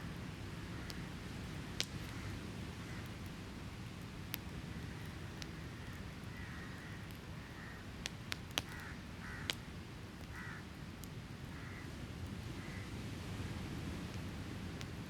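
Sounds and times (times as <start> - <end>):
campfire crackling and popping: 0.7 - 11.2, 14.0 - 15.0.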